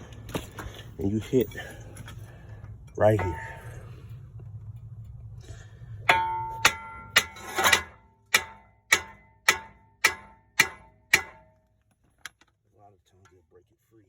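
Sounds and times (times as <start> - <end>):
hammer striking metal screwdriver: 6.1 - 11.5.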